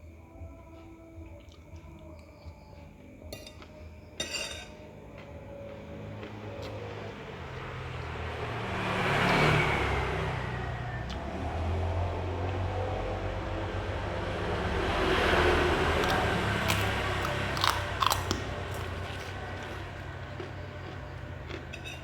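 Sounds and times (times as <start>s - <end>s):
motor vehicle passing by: 5.2s - 22.0s.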